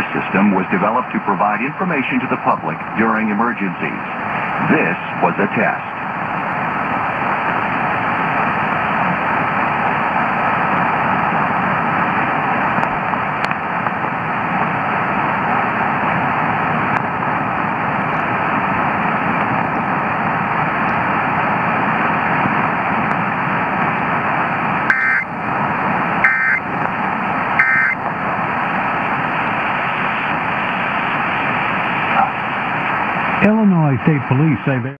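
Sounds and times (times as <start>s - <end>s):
radio static and hiss: 0.0s - 35.0s
faint steady whistle: 24.9s - 25.3s, 27.6s - 28.0s
short buzzy data bursts: 24.9s - 25.3s, 26.2s - 26.6s, 27.6s - 28.0s.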